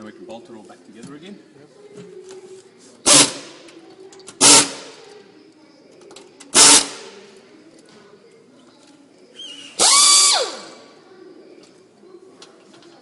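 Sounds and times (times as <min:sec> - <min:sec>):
power drill driving bolts: 0:04.3 - 0:04.8, 0:06.5 - 0:07.0.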